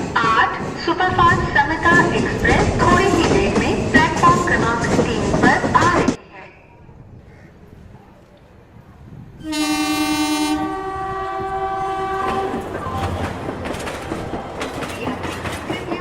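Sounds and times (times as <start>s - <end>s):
train wheels clacking over rail joints: 0.0s - 6.2s, 11.4s - 16.0s
train horn blast: 9.4s - 13.2s.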